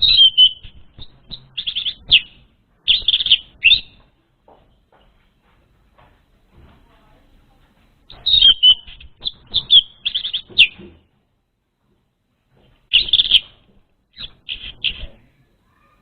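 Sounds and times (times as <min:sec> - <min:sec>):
thrush song chattering whistles: 0:00.0 - 0:04.0, 0:08.3 - 0:10.8.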